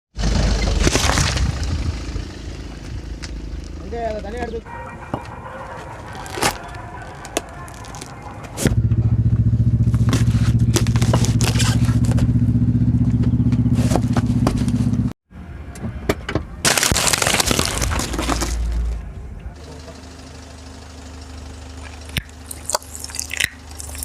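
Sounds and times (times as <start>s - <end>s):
car engine running: 0.2s - 15.1s, 16.9s - 24.0s
tyre crushing something: 6.0s - 8.8s, 9.9s - 12.3s, 16.7s - 19.0s.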